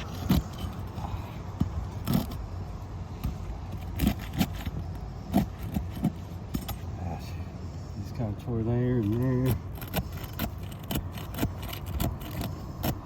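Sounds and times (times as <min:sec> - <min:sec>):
roof shingles scraping and cracking: 0:09.0 - 0:13.0.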